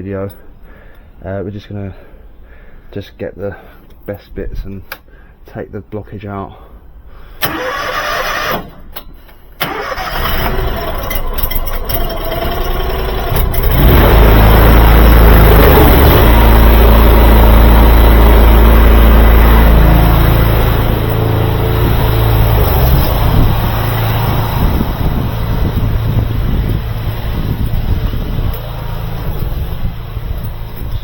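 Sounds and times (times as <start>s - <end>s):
engine rumbling: 7.0s - 31.0s.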